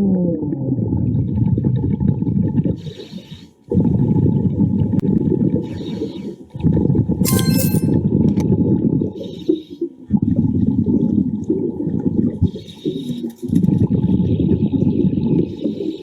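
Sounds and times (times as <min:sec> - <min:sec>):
high-pitched squeak: 0:07.2 - 0:08.0
exhaled bubbles rumbling underwater: 0:10.2 - 0:16.0.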